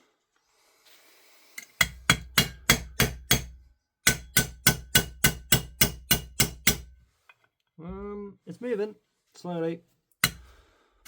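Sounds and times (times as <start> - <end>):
hammer striking pin punch: 1.8 - 6.9, 10.2 - 10.4.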